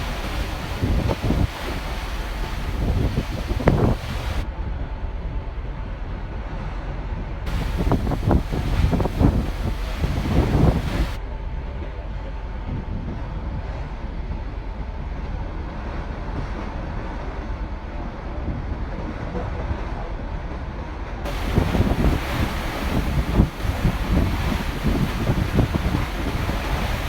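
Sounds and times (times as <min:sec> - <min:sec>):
wind buffeting the microphone: 0:00.0 - 0:04.7, 0:07.1 - 0:11.2, 0:20.6 - 0:27.0
ferry engine rumble: 0:00.0 - 0:06.6, 0:07.2 - 0:15.8, 0:16.5 - 0:27.0.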